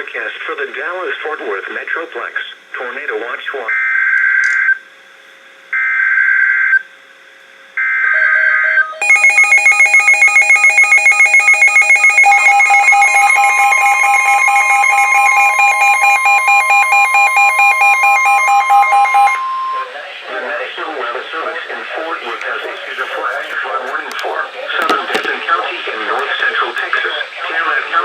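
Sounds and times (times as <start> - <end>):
pulsing electronic alarm: 7.8 - 20.1
steady warning tone: 7.8 - 20.8.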